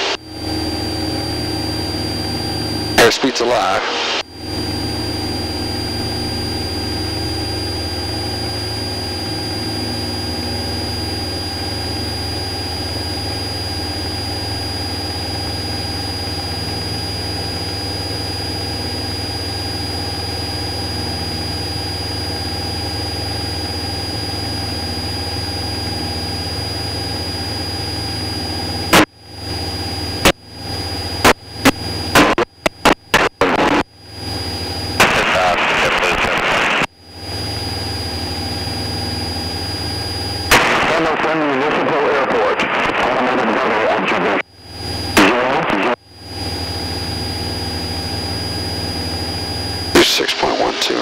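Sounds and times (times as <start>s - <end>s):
airplane engine and propeller droning: 0.0s - 51.0s.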